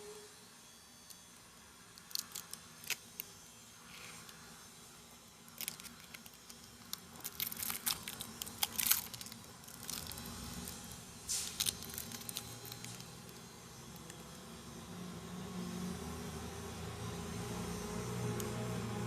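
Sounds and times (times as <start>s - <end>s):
packaging crinkling and tearing: 2.0s - 3.3s, 5.4s - 14.4s.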